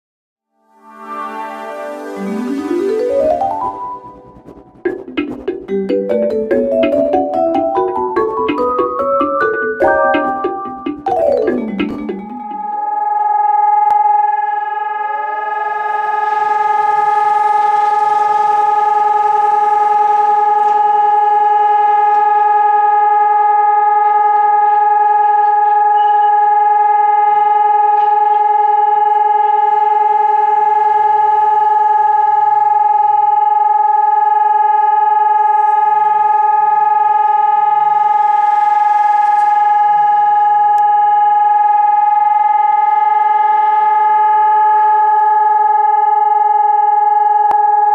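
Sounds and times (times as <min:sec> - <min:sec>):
warning siren steady tone: 0:00.8 - 0:47.9.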